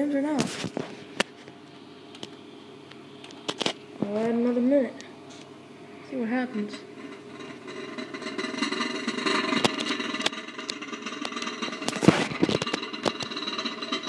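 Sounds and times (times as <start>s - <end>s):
microwave oven humming: 0.0s - 14.0s.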